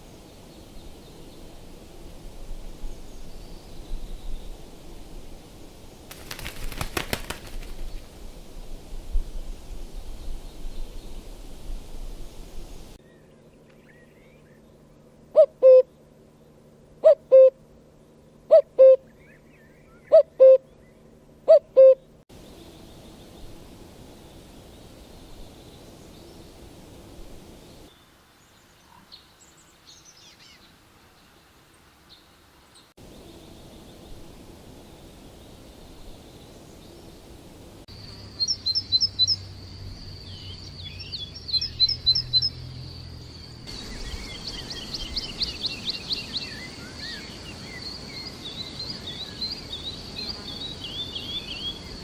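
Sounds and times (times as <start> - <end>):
steady low hum: 0.0 - 27.9, 33.0 - 52.0
outdoor ambience: 0.0 - 52.0
bird hooting two-note calls: 15.3 - 15.9, 17.0 - 17.6, 18.5 - 19.1, 20.0 - 20.7, 21.5 - 22.1
faint high bird chirps: 37.9 - 52.0.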